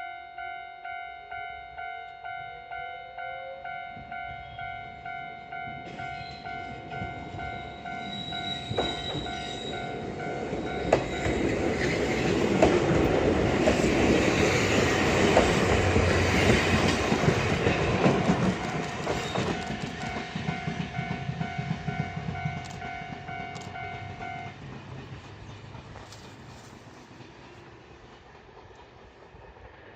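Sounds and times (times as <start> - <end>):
level-crossing warning bell: 0.0 - 24.6
train clattering over rail joints: 5.6 - 29.9.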